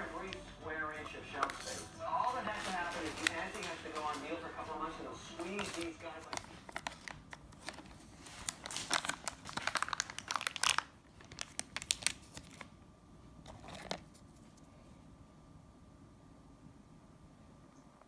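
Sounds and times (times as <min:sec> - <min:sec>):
snack packaging crinkling and tearing: 0:00.0 - 0:12.8, 0:13.5 - 0:14.6.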